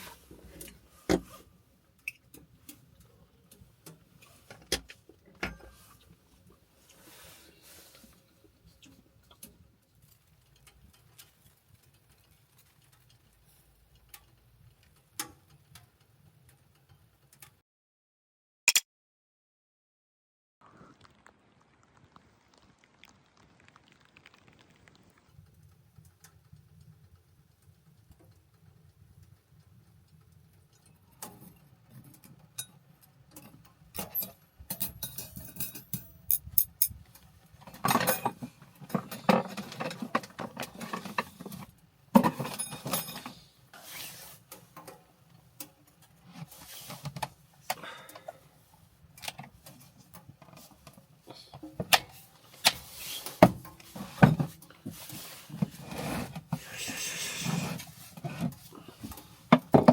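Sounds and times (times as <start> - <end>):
objects being handled clattering: 30.8 - 48.4, 49.2 - 59.9.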